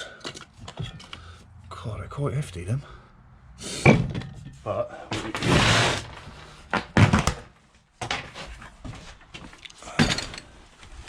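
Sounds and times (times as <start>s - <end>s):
metal parts knocking and thudding: 0.0s - 1.2s, 3.8s - 5.6s, 9.9s - 10.6s.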